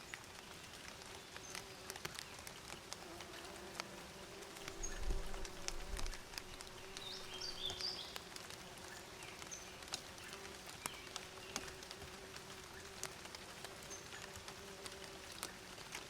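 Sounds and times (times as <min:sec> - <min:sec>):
bees buzzing: 0:03.2 - 0:08.6
bird chirping: 0:04.7 - 0:08.2.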